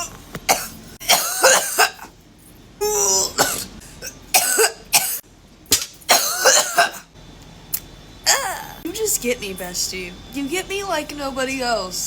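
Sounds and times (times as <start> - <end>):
person coughing hard: 0.0 - 2.1, 2.8 - 5.2, 6.1 - 7.1.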